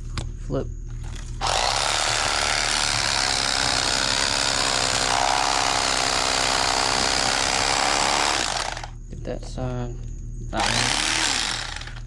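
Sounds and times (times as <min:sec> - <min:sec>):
electric knife buzzing: 0:01.2 - 0:09.0, 0:10.6 - 0:12.0.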